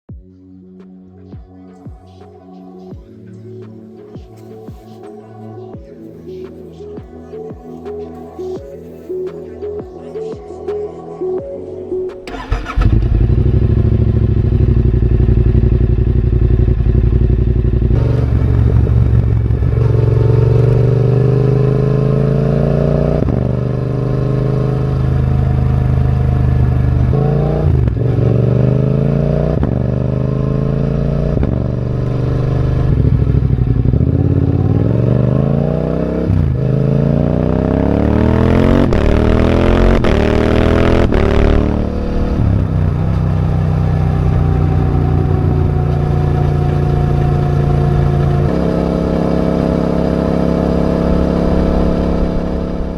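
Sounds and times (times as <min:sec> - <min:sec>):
motorcycle engine revving: 0:12.2 - 0:52.9.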